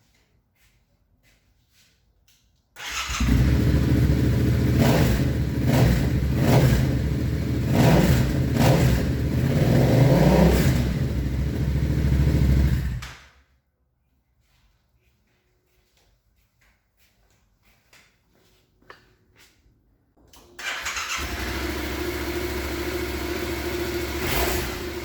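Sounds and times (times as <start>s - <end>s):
motorcycle engine revving: 2.8s - 13.0s, 20.6s - 25.0s.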